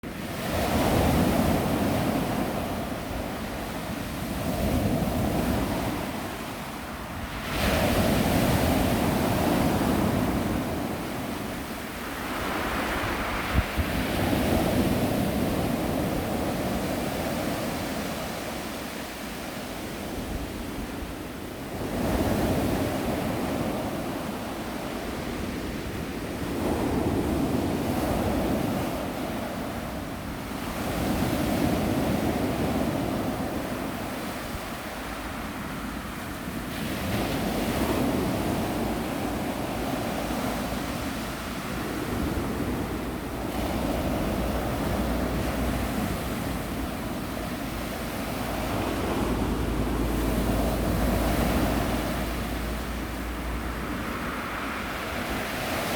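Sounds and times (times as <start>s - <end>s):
sea waves breaking on shore: 0.0s - 55.9s.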